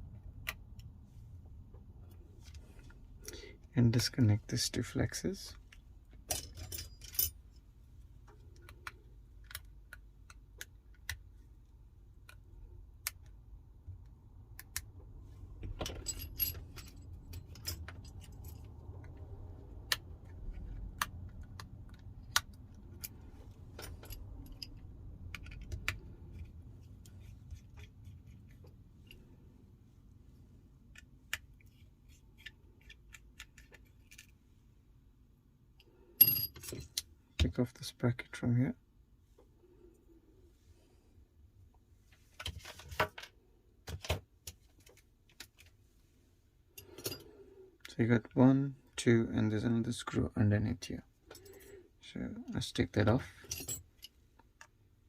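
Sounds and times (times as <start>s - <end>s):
low steady hum: 0.0s - 55.0s
small parts being handled: 5.4s - 11.5s, 15.6s - 34.7s.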